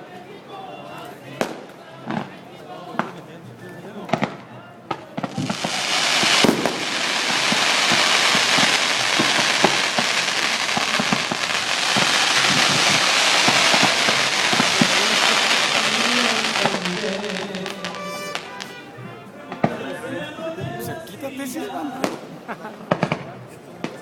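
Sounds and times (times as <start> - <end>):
fireworks crackling: 4.1 - 20.0, 22.0 - 24.0
loud firework bang: 5.2 - 18.8.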